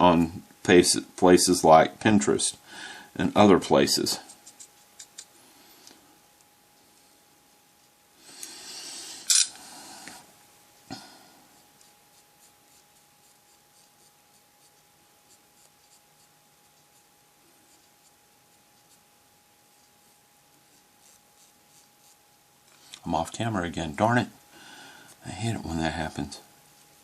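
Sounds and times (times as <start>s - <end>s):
faint steady whine: 0.0s - 27.0s
brush scratching on plastic: 4.2s - 5.3s, 11.7s - 22.4s.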